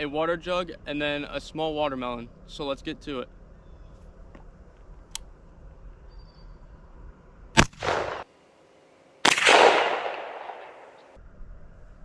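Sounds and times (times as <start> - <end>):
shotgun blasts with echo: 7.6 - 8.3, 9.2 - 11.2.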